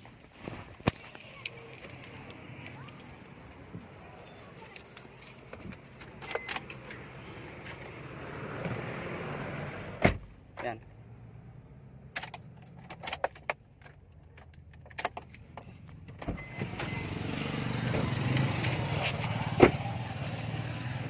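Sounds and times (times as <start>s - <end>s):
metallic clicks and clinks: 0.9s - 3.6s
vehicle engine running: 15.3s - 21.0s.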